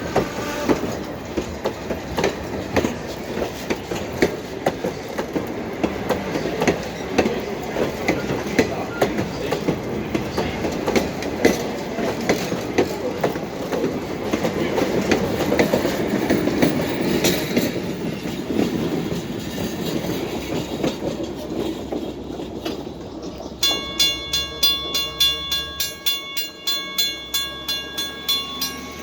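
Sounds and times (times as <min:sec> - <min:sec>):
train wheels clicking over joints: 0:00.0 - 0:29.0
crossing signal bell ringing: 0:23.6 - 0:29.0.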